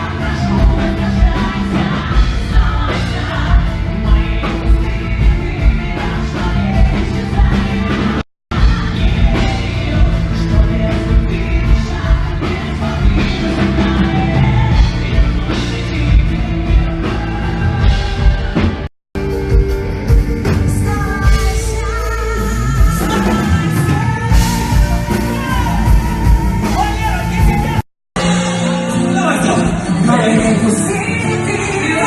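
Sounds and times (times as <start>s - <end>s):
live pop-rock band with singing: 0.0s - 32.0s.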